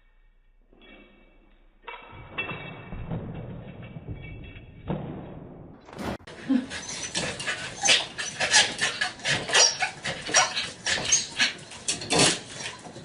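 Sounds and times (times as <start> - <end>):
dog crying: 6.5 - 11.7.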